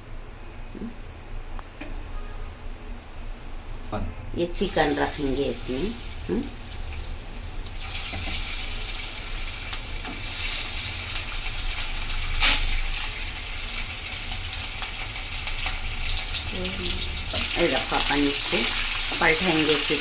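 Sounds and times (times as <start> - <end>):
chicken sizzling in hot oil: 4.6 - 20.0.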